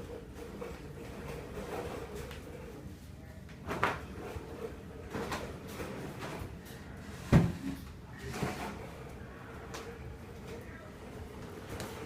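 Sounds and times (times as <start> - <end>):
knocks and bumps on furniture: 7.3 - 7.8.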